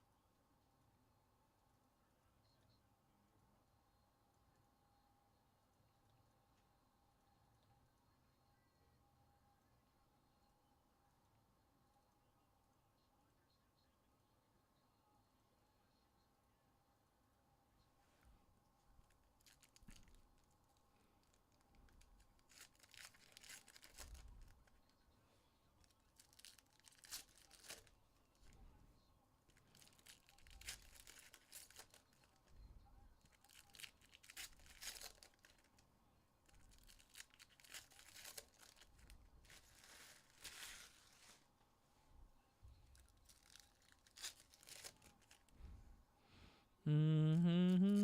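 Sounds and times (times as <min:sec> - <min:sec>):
card wrappers tearing open: 0:19.4 - 0:20.5, 0:21.2 - 0:24.8, 0:25.8 - 0:28.0, 0:29.5 - 0:32.5, 0:33.2 - 0:35.8, 0:36.5 - 0:41.4, 0:42.9 - 0:45.5.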